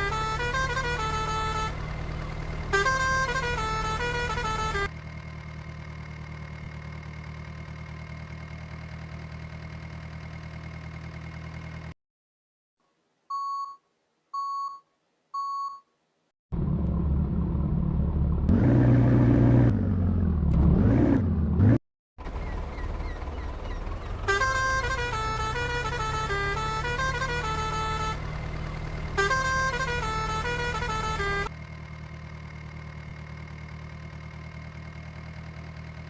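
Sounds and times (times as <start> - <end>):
engine hum: 0.0 - 12.0, 16.5 - 36.0
short electronic beeps: 13.3 - 15.9.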